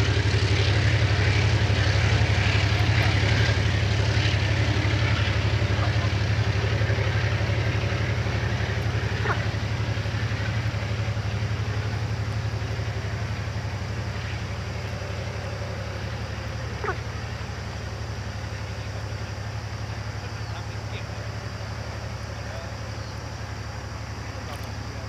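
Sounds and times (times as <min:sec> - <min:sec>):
train rumbling past: 0:00.0 - 0:25.0.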